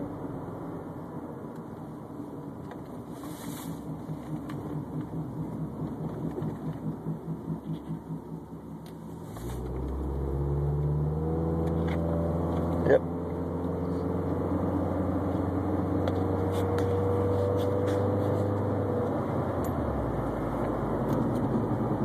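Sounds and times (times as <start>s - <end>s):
low hum: 0.0s - 21.0s
road noise: 0.0s - 22.0s
wheel bearing throbbing: 3.0s - 10.3s.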